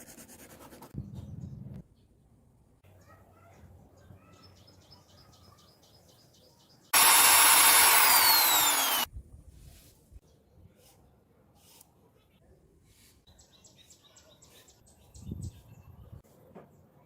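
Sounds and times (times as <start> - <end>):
small electric motor whirring: 7.0 - 9.1.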